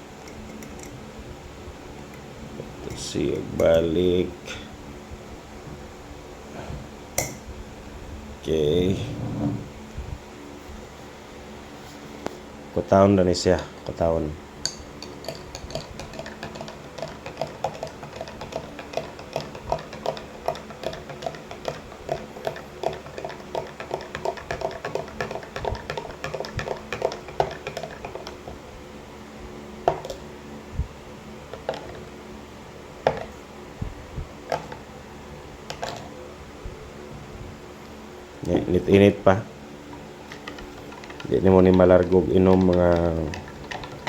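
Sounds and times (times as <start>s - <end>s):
spoon clinking in a cup: 14.6s - 16.7s.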